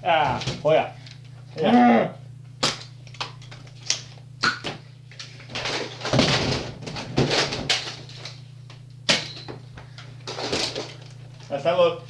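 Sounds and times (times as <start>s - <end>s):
clattering and scuffling: 10.2s - 11.2s.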